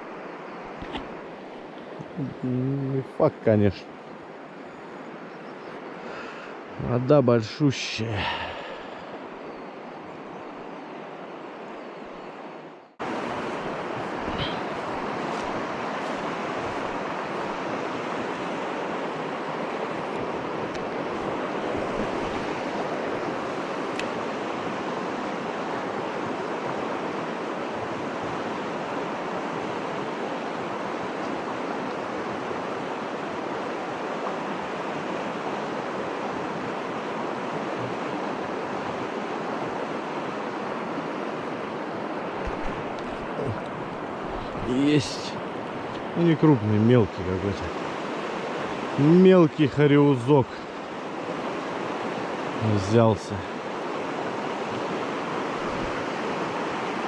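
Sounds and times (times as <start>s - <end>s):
water rushing over rocks: 13.0s - 57.0s.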